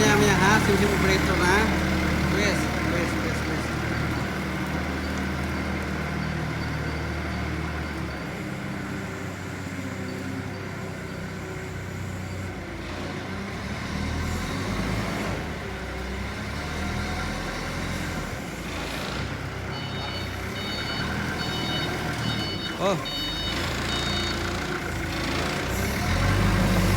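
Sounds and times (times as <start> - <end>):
heavy vehicle engine running: 0.0 - 26.9.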